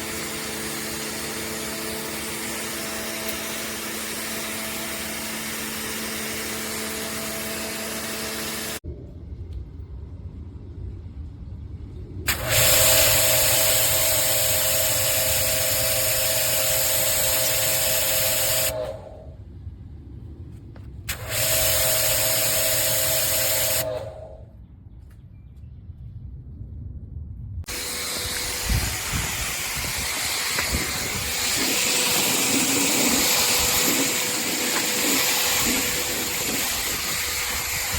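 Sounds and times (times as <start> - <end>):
machine whine: 0.0 - 9.7, 11.9 - 19.4, 20.8 - 24.6, 27.7 - 37.9
pressure washer spray hiss: 12.3 - 18.9, 21.1 - 24.1, 27.7 - 37.9.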